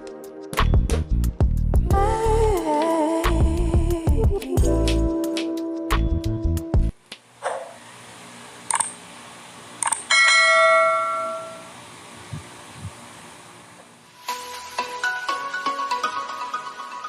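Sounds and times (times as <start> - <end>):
pop song: 1.8 - 6.6
metallic bell ring: 10.1 - 11.7.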